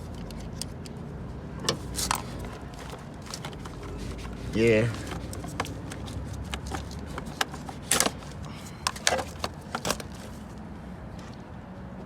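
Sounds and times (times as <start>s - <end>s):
tools clicking on battery terminals: 1.7s - 10.4s.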